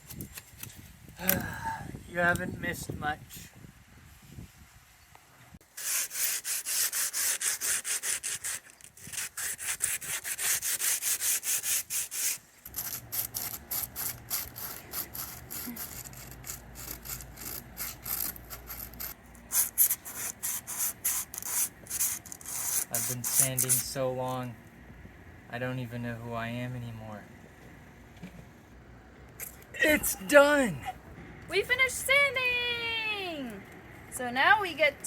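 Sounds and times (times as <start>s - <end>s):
sandpaper rubbing back and forth: 5.7s - 23.9s.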